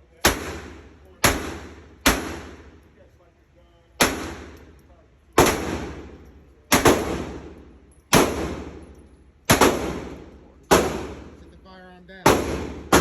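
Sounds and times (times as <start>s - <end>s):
gunshots with echo: 0.2s - 2.8s, 4.0s - 4.7s, 5.4s - 11.4s, 12.2s - 13.0s.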